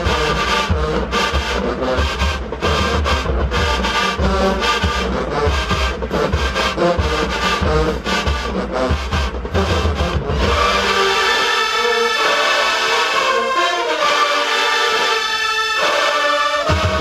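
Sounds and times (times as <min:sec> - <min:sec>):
steady drum beat: 0:00.0 - 0:11.4, 0:16.6 - 0:17.0
marching band brass: 0:00.0 - 0:17.0.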